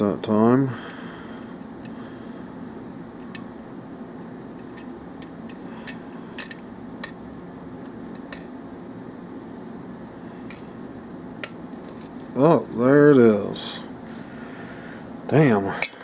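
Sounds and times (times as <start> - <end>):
steady low hum: 0.0 - 16.0
lock pick clicking on pins: 3.2 - 3.7, 4.5 - 7.2.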